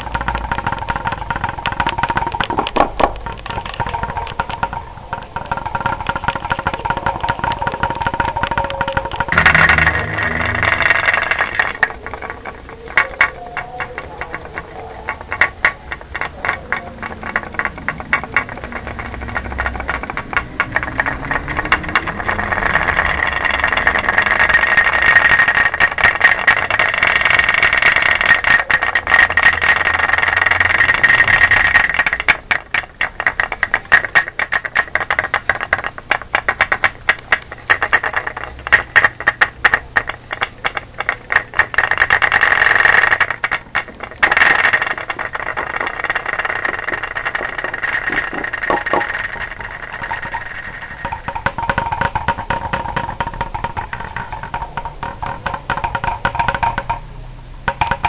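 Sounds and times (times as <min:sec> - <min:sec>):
high whine: 0:06.6 - 0:11.9.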